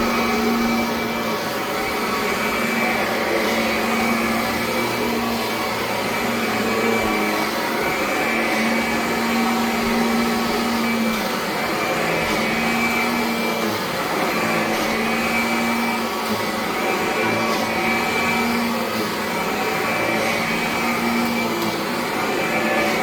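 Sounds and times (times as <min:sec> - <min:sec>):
upright vacuum cleaner on carpet: 0:00.0 - 0:23.0.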